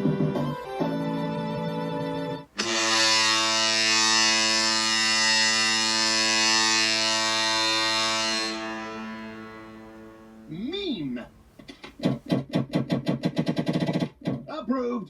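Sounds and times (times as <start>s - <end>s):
goal horn blast: 2.6s - 10.5s.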